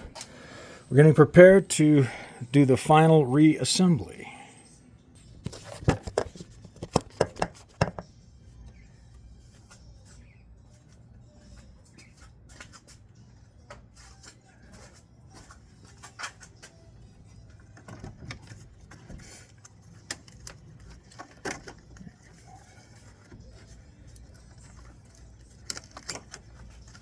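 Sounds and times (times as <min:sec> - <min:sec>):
clicks and taps on parts: 0:05.9 - 0:08.0.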